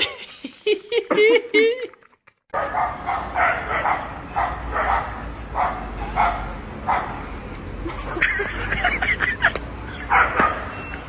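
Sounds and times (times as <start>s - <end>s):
dog barking: 2.5s - 7.2s, 10.1s - 10.8s.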